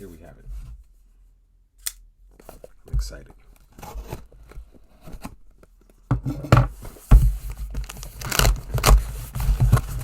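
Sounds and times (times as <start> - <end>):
package ripping and scraping: 7.7 - 10.0.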